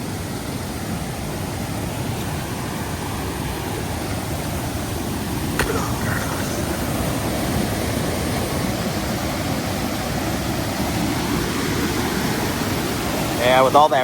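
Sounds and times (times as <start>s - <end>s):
waterfall roaring: 1.2s - 14.0s.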